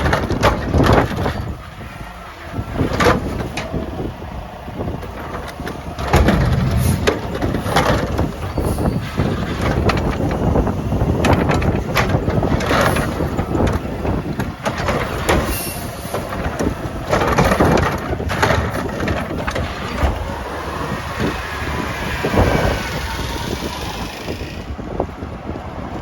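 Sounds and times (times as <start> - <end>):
truck engine running: 0.0 - 25.4
hydraulic whine: 0.8 - 25.0
metal clanks and bangs: 5.0 - 10.6, 11.2 - 20.3.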